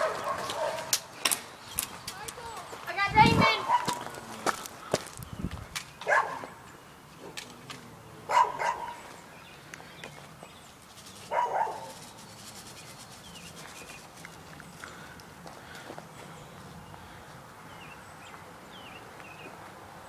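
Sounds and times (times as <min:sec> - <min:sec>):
dog barking: 0:00.0 - 0:00.9, 0:03.6 - 0:04.0, 0:06.0 - 0:06.6, 0:08.3 - 0:09.0, 0:11.3 - 0:12.0.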